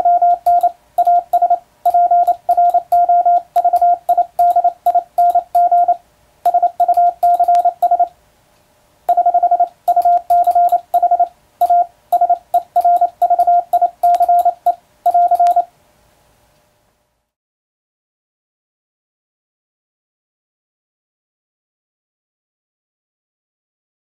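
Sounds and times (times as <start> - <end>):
morse code tone: 0.0 - 8.1, 9.1 - 15.7.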